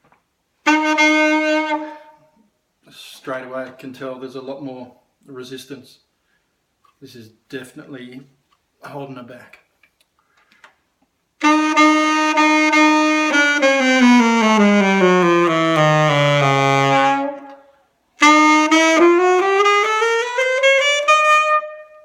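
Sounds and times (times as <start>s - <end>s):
saxophone playing scales: 0.6s - 2.4s, 11.4s - 22.0s.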